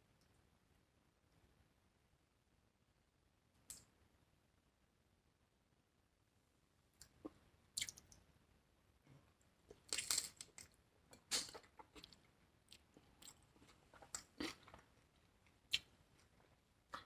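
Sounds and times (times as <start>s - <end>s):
crunchy chewing: 9.7s - 14.9s.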